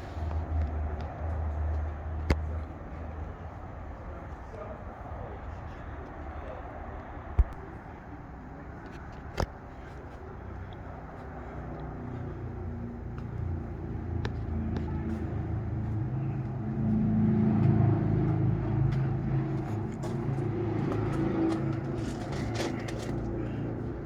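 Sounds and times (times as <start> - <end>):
engine rumbling: 0.0 - 24.0.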